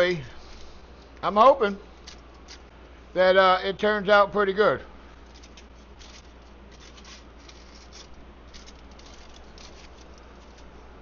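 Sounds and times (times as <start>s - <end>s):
seasoning rattling in shaker: 5.2s - 10.8s.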